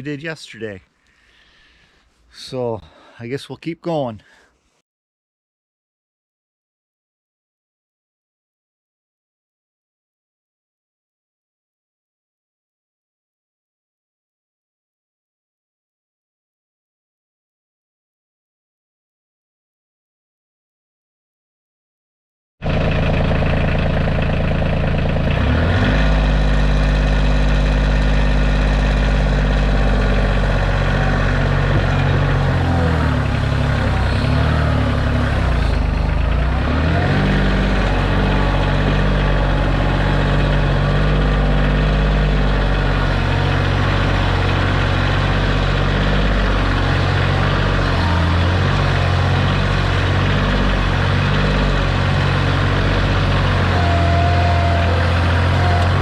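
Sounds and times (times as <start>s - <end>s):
tractor diesel engine running: 22.6s - 56.0s.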